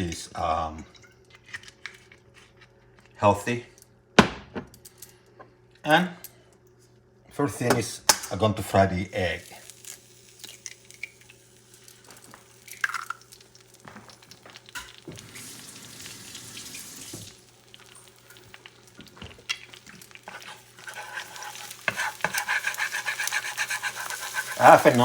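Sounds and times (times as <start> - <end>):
oil sizzling in a pan: 9.2 - 25.0
cooking clicks and knocks: 17.1 - 25.0.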